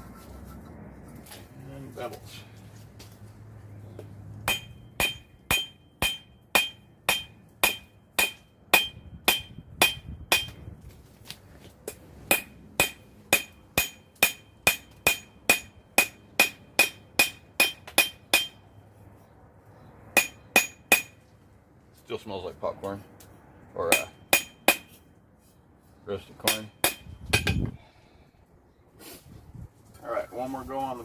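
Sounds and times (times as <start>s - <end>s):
hammer striking metal on anvil: 4.4s - 10.6s, 12.3s - 18.6s, 20.2s - 21.2s, 23.9s - 25.0s, 26.4s - 27.7s.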